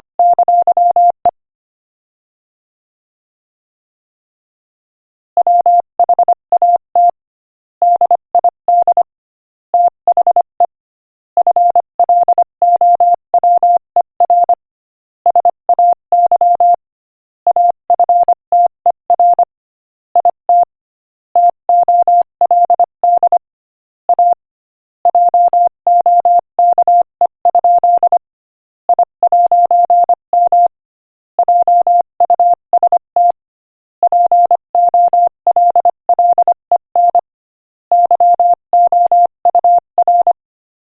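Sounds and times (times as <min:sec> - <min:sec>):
morse code tone: 0:34.0 - 0:37.3, 0:37.9 - 0:40.4.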